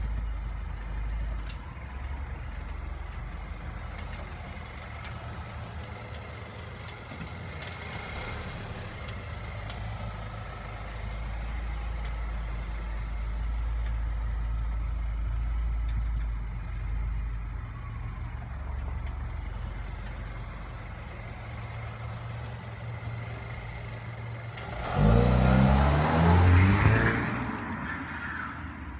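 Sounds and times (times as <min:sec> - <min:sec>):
low vehicle engine rumble: 0:00.0 - 0:28.9
sharp clicks: 0:01.3 - 0:08.4, 0:11.9 - 0:17.0, 0:18.0 - 0:23.3.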